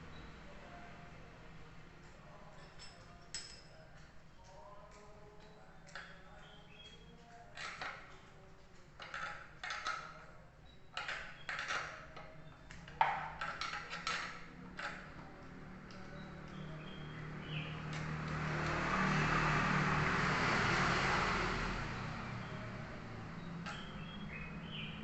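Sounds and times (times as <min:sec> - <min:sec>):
hand tools clinking on metal: 0:02.0 - 0:04.2.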